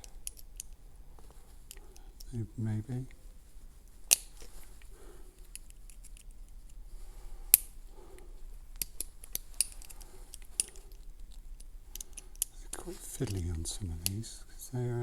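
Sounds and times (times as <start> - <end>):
light ticks: 3.9 - 6.8, 7.5 - 14.6
sharp metallic clicks: 7.5 - 7.8, 8.8 - 14.3
metal tools scraping padlock: 8.8 - 10.9.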